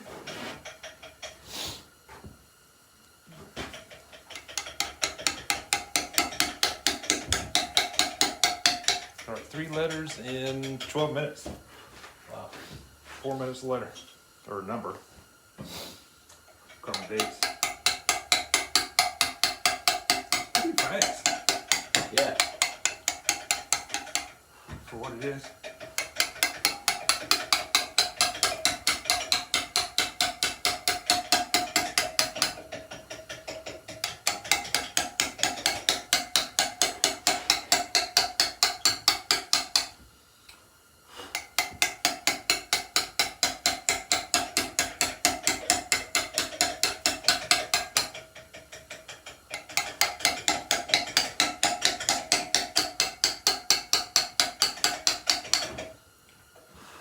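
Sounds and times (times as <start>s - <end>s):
hammer tapping chisel on stone: 4.4s - 10.9s, 16.9s - 24.3s, 25.4s - 40.0s, 41.3s - 48.2s, 49.5s - 55.8s.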